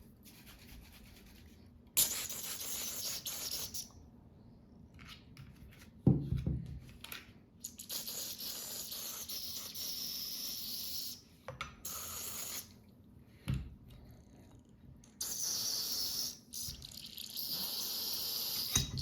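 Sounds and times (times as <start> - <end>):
aerosol spray hissing: 15.2 - 16.7, 17.4 - 18.8.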